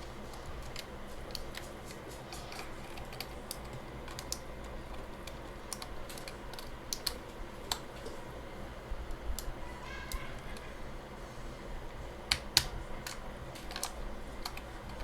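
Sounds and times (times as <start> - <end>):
keycaps clicking onto switches: 0.4 - 8.1, 12.3 - 15.0.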